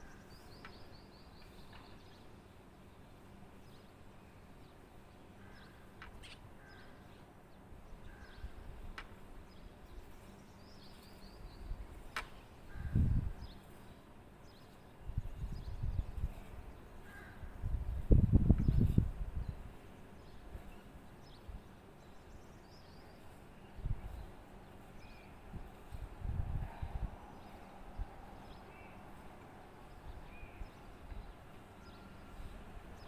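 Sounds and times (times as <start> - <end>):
faint steady hum: 0.0 - 33.0.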